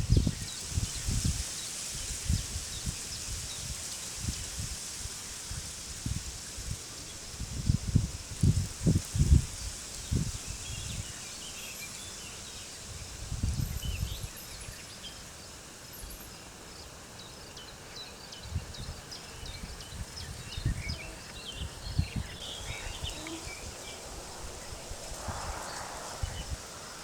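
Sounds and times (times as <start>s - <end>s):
wind buffeting microphone: 0.0s - 4.8s, 5.5s - 11.3s, 12.8s - 14.8s, 18.4s - 27.0s
steady hiss: 0.0s - 27.0s
birds chirping: 17.2s - 24.9s.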